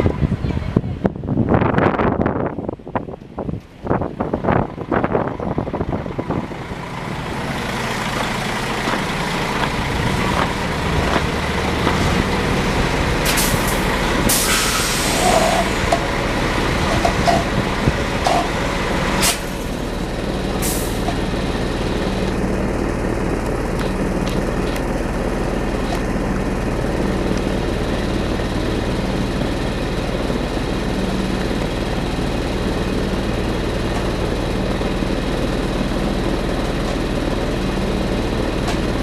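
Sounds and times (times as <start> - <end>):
heavy vehicle engine rumble: 0.0 - 39.0
sharp hisses: 13.2 - 15.9.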